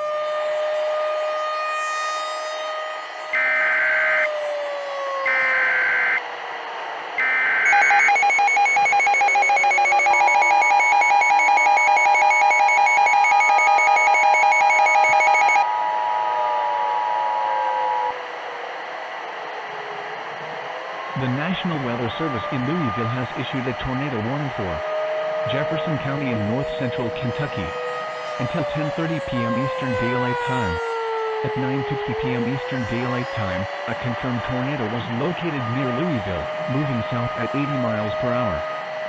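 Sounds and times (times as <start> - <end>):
buzzing alert tone: 7.7 - 15.6
pitch-sliding tone: 7.7 - 15.6
screeching data bursts: 7.7 - 15.6.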